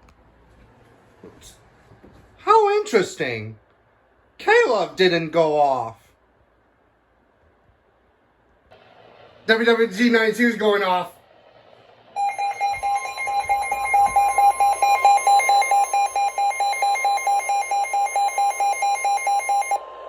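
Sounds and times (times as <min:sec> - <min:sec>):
rapid beeping: 0:12.2 - 0:19.8
steady alarm tone: 0:12.2 - 0:20.0.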